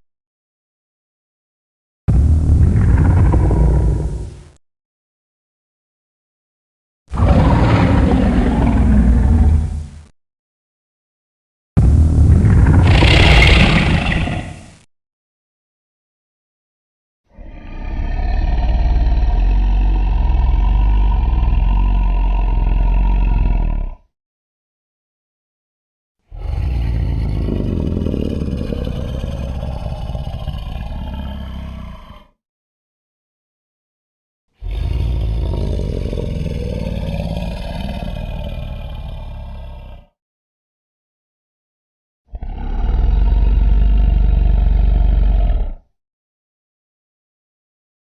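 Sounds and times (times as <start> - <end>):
deep rough throbbing creature rumble: 2.1 - 4.6, 7.1 - 10.1, 11.8 - 14.8, 17.4 - 24.1, 26.3 - 32.4, 34.6 - 40.1, 42.3 - 45.8.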